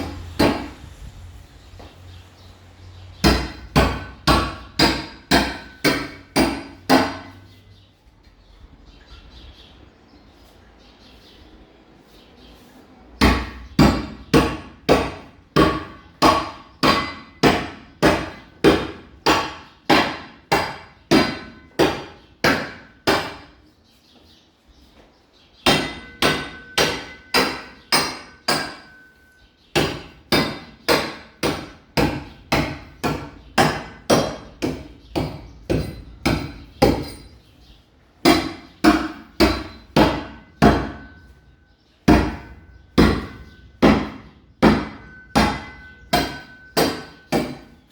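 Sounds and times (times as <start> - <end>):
hammer striking metal: 0.0 - 0.8, 3.2 - 7.4, 13.2 - 23.5, 25.6 - 29.2, 29.8 - 37.4, 38.2 - 41.4, 42.1 - 47.8.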